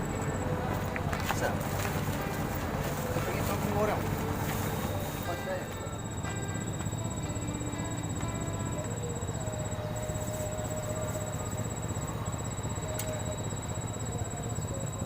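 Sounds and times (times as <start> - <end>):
high-pitched insect trill: 4.6 - 15.0.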